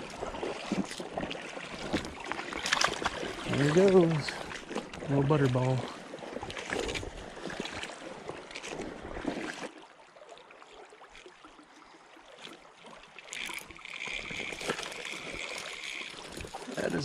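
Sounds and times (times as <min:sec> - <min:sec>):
water splashing: 0:00.0 - 0:17.0
reel clicks: 0:01.8 - 0:05.6, 0:12.4 - 0:17.0.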